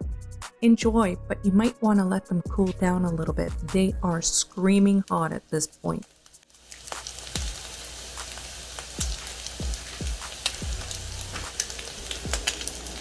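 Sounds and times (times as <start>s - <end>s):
dumplings sizzling in hot oil: 5.0s - 13.0s.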